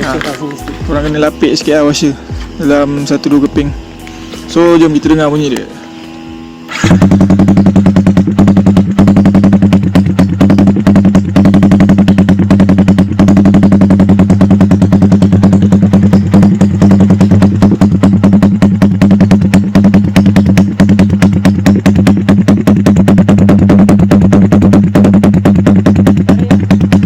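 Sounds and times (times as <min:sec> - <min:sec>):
motorcycle engine idling loudly: 0:00.0 - 0:27.0.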